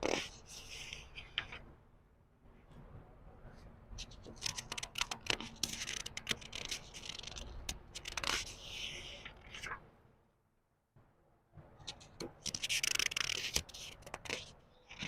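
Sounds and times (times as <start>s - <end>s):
paper crackling and rustling: 4.1s - 9.8s, 11.9s - 15.0s.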